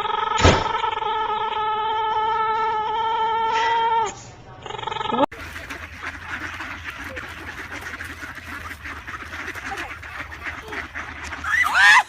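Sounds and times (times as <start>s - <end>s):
flock of birds calling: 4.6s - 12.0s
loud bird call: 4.6s - 12.0s.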